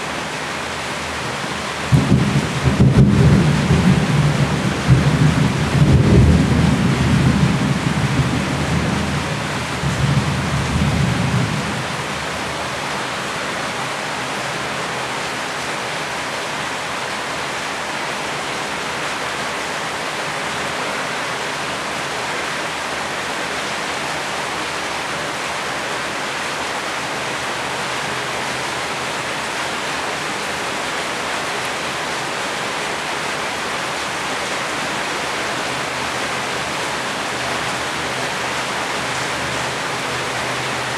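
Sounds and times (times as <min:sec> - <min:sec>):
heavy rain: 0:00.0 - 0:40.9
thunder rumbling: 0:01.9 - 0:12.1.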